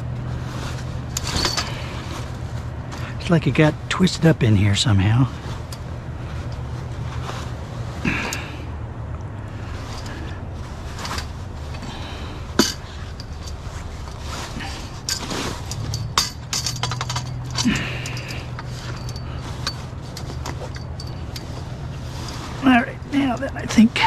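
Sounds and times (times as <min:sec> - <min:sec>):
steady low hum: 0:00.0 - 0:24.0
scrap metal clinks and rattles: 0:00.1 - 0:08.6, 0:09.5 - 0:24.0.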